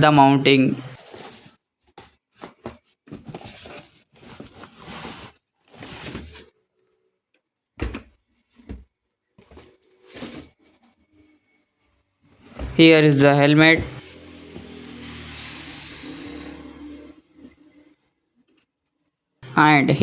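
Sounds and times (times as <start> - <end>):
rustling handling noise: 0.9 - 6.6.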